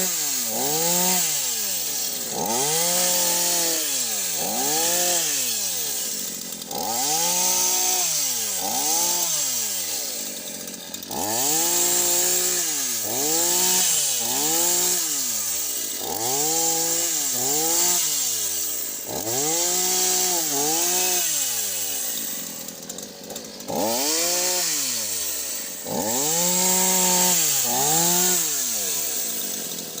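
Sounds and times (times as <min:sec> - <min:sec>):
chainsaw engine revving: 0:00.0 - 0:30.0.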